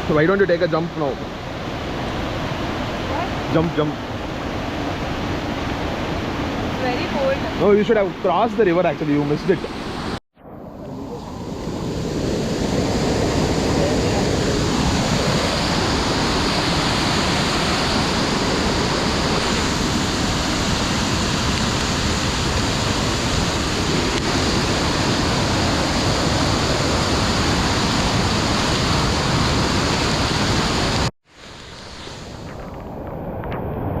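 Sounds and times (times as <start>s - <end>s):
waterfall rushing: 11.2s - 32.5s.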